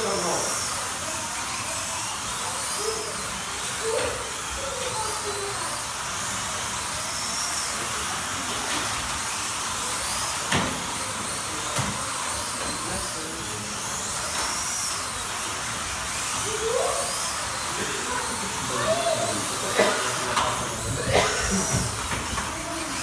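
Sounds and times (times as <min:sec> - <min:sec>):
slot car electric motors whining: 0:00.0 - 0:23.0.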